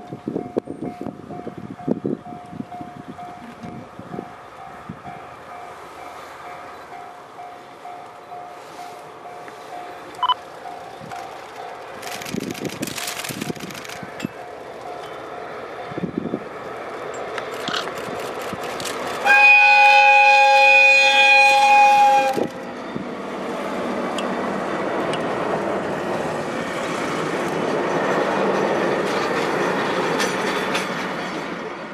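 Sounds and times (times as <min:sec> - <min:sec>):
locomotive running noise: 0:00.0 - 0:31.9
locomotive horn blast: 0:19.2 - 0:22.5.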